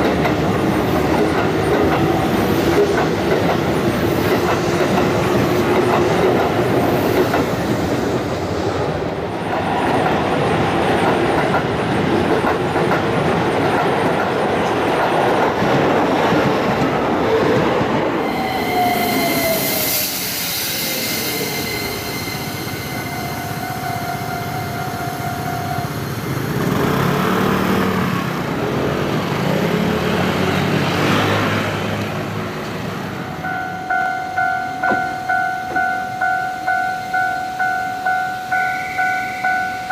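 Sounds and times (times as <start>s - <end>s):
train wheels clattering on rails: 0.0s - 8.2s, 9.1s - 24.9s, 34.4s - 37.1s
electric train passing: 0.0s - 39.9s
level crossing warning bell: 21.4s - 26.1s, 33.2s - 39.9s.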